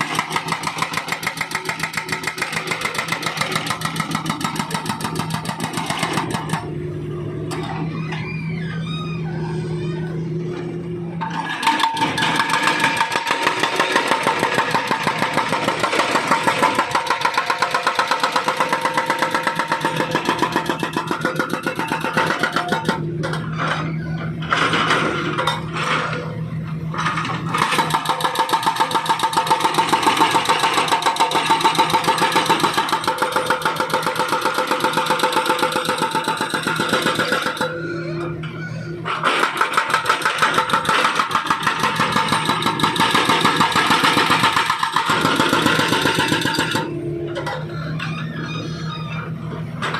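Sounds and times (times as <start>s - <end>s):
hydraulic breaker hammering asphalt: 0.0s - 6.8s, 11.2s - 23.5s, 27.0s - 38.2s, 39.1s - 47.5s
excavator engine running: 0.0s - 49.9s.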